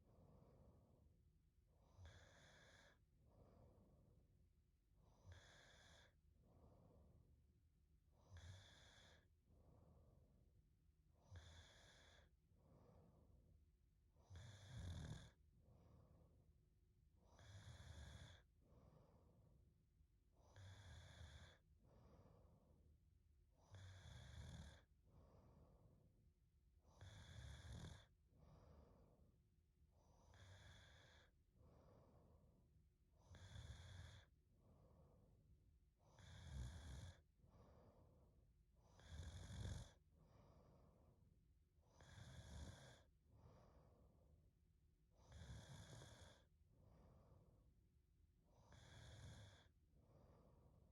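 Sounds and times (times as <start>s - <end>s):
woman snoring softly: 1.8s - 4.2s, 5.0s - 7.2s, 8.1s - 10.3s, 11.1s - 13.4s, 14.2s - 16.4s, 17.2s - 19.4s, 20.3s - 22.7s, 23.5s - 26.0s, 26.8s - 29.2s, 30.0s - 35.0s, 35.9s - 41.2s, 41.8s - 44.2s, 45.0s - 47.7s, 48.4s - 50.9s.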